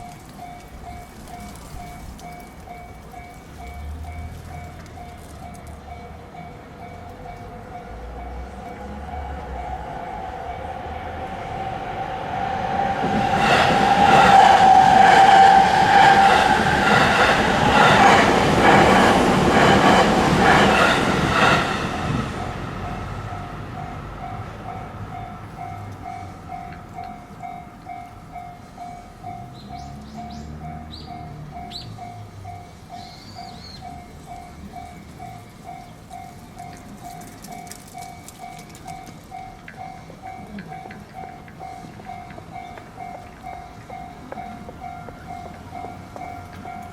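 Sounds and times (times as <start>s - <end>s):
level crossing warning bell: 0.0s - 11.8s, 13.4s - 46.9s
train wheels clattering over rail joints: 13.1s - 23.0s.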